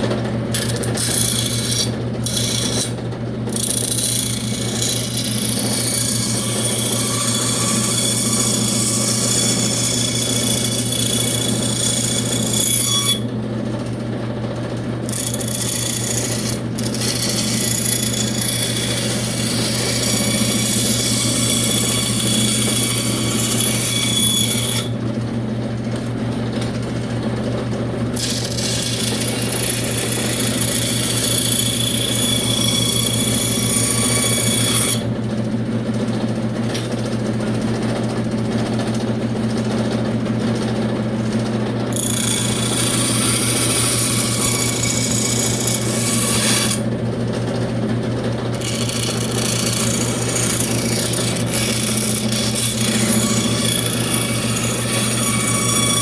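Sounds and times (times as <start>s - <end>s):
power tool humming: 0.0s - 13.3s, 15.0s - 25.0s, 28.1s - 35.1s, 41.9s - 47.0s, 48.5s - 56.0s.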